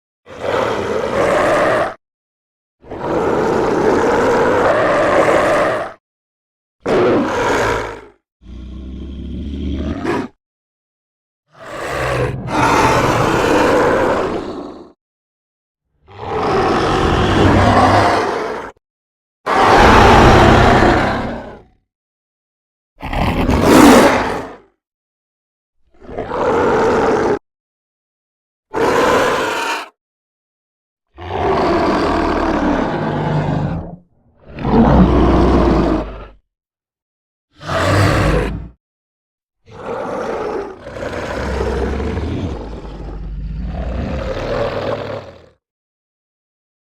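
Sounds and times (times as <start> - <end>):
demon roar: 2.9 - 6.0, 6.8 - 10.4, 11.5 - 15.0, 16.1 - 18.8, 19.5 - 21.7, 23.0 - 24.7, 26.0 - 27.4, 28.7 - 30.0, 31.2 - 36.4, 37.6 - 38.8, 39.7 - 45.3
low rumbling growl: 8.5 - 10.1, 16.2 - 18.3, 19.6 - 21.7, 31.9 - 36.4, 41.4 - 44.5.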